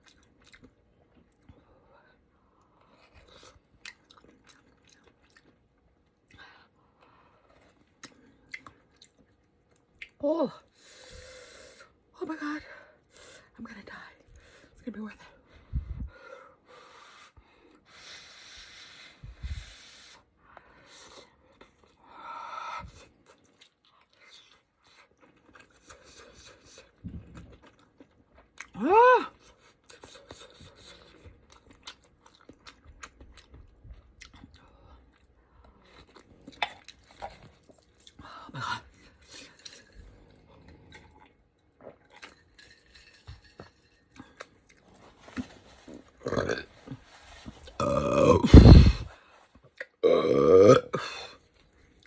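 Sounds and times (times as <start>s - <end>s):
chewing and mouth sounds: 0.0s - 1.6s, 2.6s - 6.6s, 7.4s - 10.2s, 22.8s - 47.0s.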